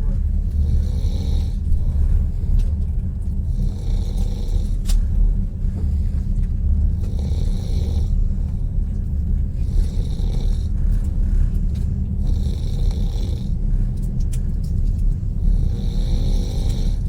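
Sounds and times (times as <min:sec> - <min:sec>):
train carriage low rumble: 0:00.0 - 0:17.0
person snoring: 0:00.6 - 0:01.8, 0:03.5 - 0:04.8, 0:07.0 - 0:08.3, 0:09.6 - 0:10.8, 0:12.2 - 0:13.6, 0:15.4 - 0:17.0.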